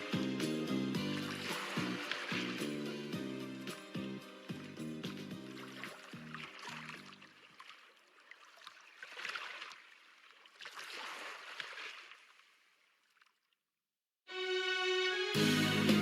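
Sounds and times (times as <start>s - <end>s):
music: 0.0s - 7.0s, 14.3s - 16.0s
water rushing and splashing: 0.0s - 12.6s.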